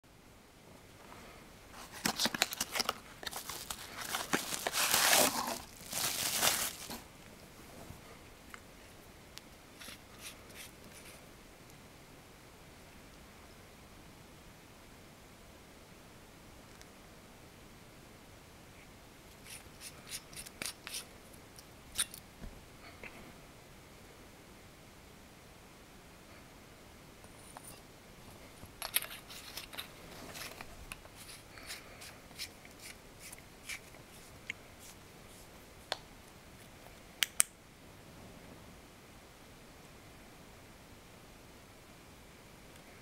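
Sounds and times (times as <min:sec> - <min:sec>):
packaging tearing: 0:01.8 - 0:07.0
packaging crinkling: 0:01.8 - 0:07.1.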